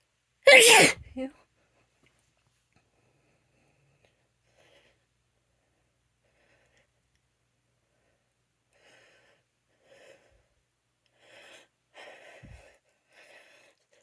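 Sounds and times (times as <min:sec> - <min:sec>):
woman breathing: 0:07.9 - 0:14.0.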